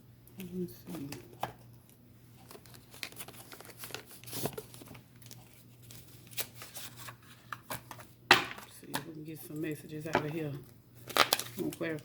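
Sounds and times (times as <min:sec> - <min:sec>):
cards shuffling: 0:02.4 - 0:08.1.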